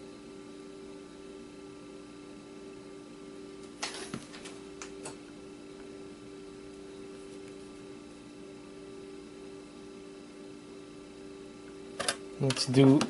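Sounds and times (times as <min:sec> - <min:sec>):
steady electrical hum: 0:00.0 - 0:13.0.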